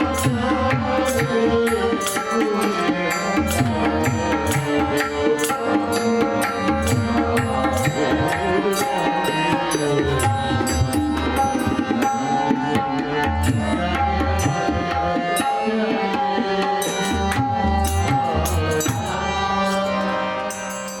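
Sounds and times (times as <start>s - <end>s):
tabla drumming: 0.0s - 21.0s.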